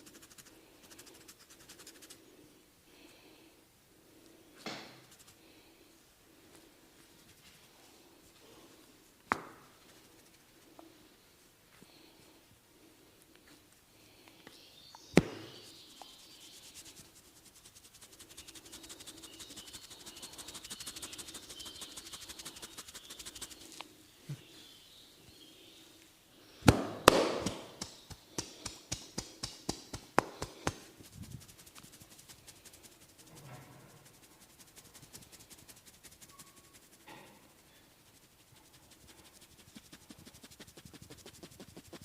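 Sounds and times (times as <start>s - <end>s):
hands rubbing through hair: 0.0s - 2.4s, 4.9s - 5.6s, 9.8s - 11.0s, 15.6s - 24.5s, 27.2s - 42.0s
sharp cracks: 26.7s - 30.8s.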